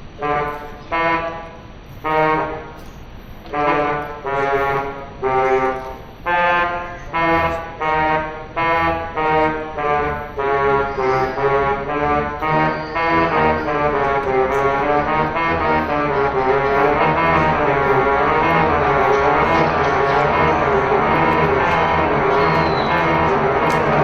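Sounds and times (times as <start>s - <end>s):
pipe organ slow melody: 0.0s - 24.0s.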